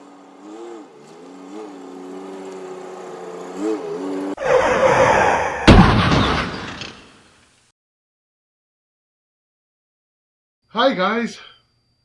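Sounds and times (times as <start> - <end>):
engine-like hum: 0.0 - 4.4.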